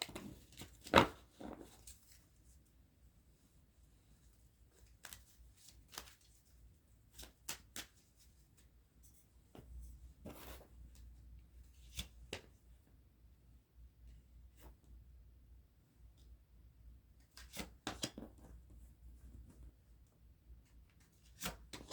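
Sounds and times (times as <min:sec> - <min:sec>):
cards being shuffled: 0:04.8 - 0:06.5, 0:07.1 - 0:08.3.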